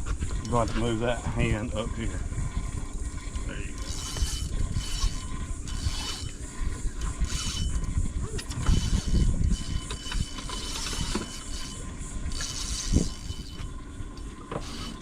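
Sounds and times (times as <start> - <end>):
wind on microphone: 0.0 - 15.0
fishing reel cranking: 3.5 - 15.0.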